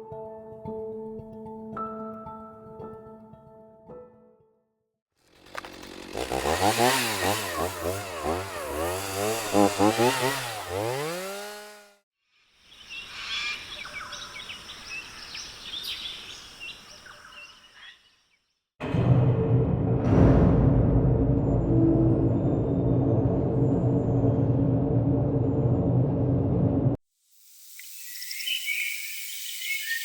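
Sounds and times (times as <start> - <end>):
chainsaw engine revving: 5.2 - 12.0
birds chirping: 12.7 - 18.2, 27.8 - 30.0.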